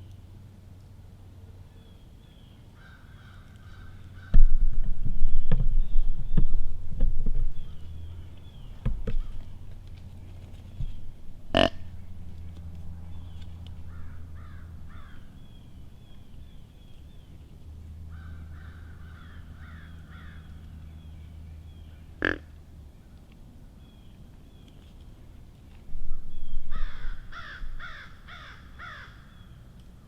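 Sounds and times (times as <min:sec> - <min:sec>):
crow cawing: 0:02.8 - 0:04.4, 0:13.9 - 0:15.3, 0:18.1 - 0:20.5, 0:26.7 - 0:29.4
small birds chirping: 0:05.1 - 0:22.4, 0:23.0 - 0:30.0.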